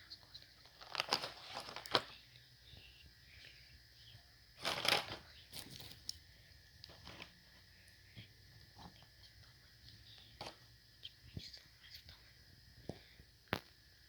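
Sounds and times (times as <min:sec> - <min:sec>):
packaging rustling or tearing: 0:00.6 - 0:02.1, 0:04.6 - 0:06.0.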